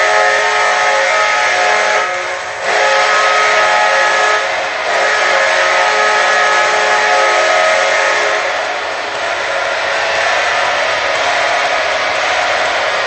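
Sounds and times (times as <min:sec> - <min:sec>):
arena goal horn blasts: 0:00.0 - 0:08.5
loud crowd noise: 0:00.0 - 0:13.0.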